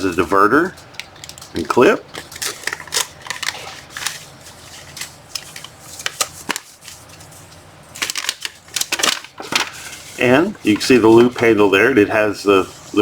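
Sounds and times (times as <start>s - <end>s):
plastic packaging crinkling: 1.0s - 11.0s.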